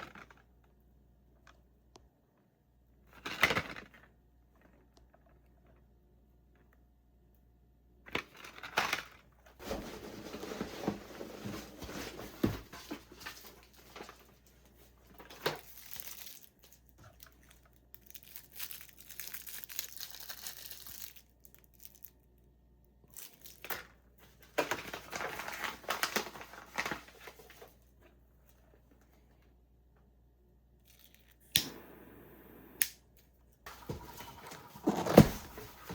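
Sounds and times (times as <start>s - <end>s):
cardboard crinkling and tearing: 15.2s - 22.0s, 24.6s - 27.7s, 34.8s - 35.9s.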